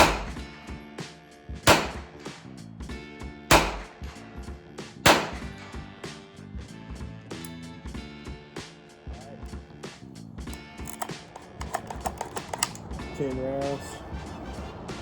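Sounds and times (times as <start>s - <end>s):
gunshots: 0.0s - 0.5s, 1.6s - 2.3s, 3.5s - 4.3s, 5.0s - 5.7s
background music: 0.0s - 15.0s.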